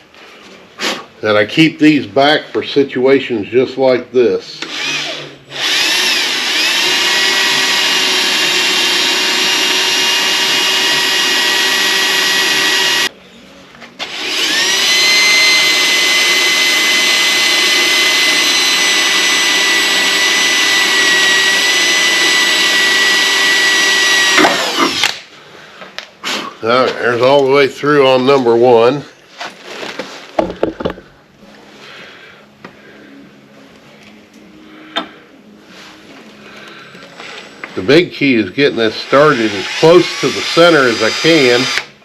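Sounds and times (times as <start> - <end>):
power drill whining: 4.6 - 13.1, 14.0 - 25.2, 39.0 - 41.9.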